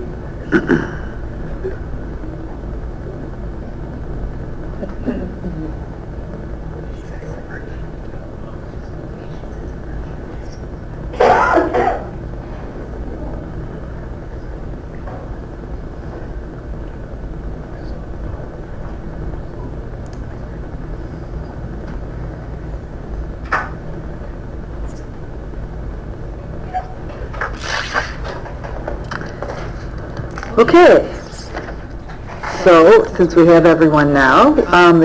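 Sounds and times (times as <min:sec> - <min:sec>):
low room hum: 0:00.0 - 0:35.0
person coughing: 0:00.5 - 0:01.1, 0:04.8 - 0:05.7, 0:11.2 - 0:12.1.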